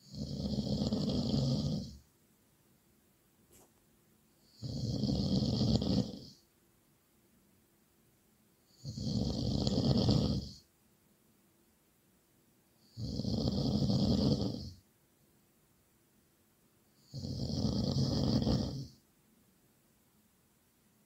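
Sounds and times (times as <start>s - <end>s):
loud snoring: 0.0s - 2.0s, 4.4s - 6.4s, 8.7s - 10.6s, 12.8s - 14.8s, 17.0s - 19.0s.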